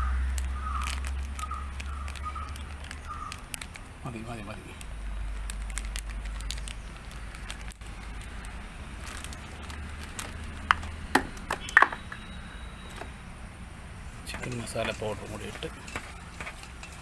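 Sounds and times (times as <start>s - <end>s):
steady low rumble: 0.0s - 14.4s
sharp knocks: 10.7s - 12.2s.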